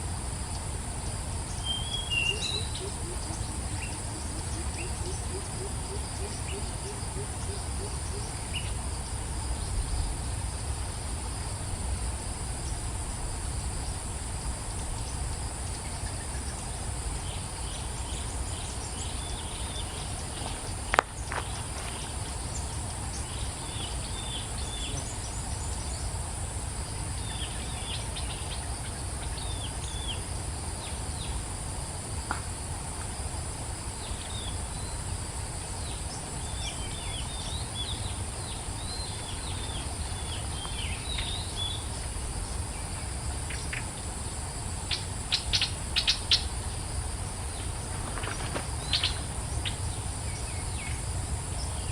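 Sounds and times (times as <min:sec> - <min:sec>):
high-pitched insect drone: 0:00.0 - 0:32.4
small birds chirping: 0:47.6 - 0:51.9.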